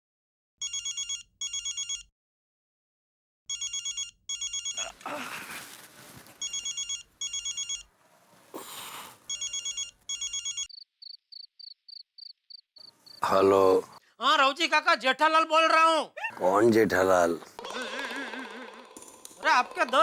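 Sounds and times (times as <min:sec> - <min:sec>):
rustling noise: 0:04.8 - 0:09.5
crickets chirping: 0:10.7 - 0:14.0.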